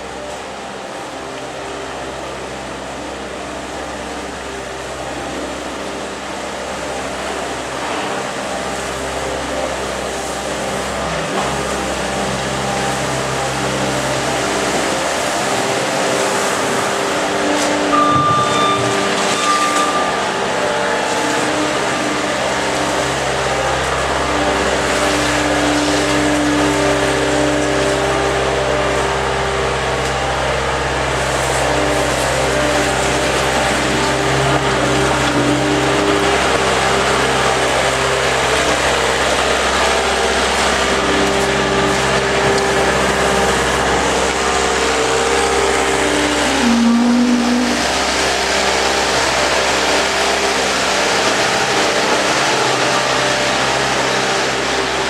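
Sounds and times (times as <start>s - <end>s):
farm vehicle engine running: 0.0s - 55.0s
short high beeps: 17.9s - 20.2s.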